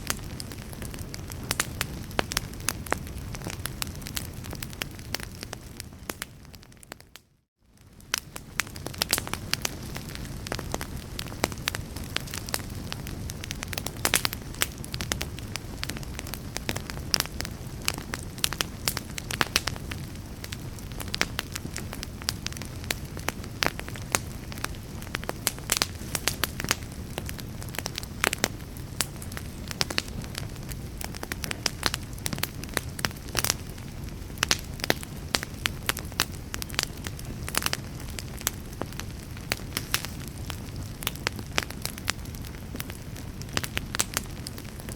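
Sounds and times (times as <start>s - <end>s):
flames rushing: 0.0s - 6.9s, 7.8s - 44.9s
wood fire crackling and popping: 0.0s - 44.9s.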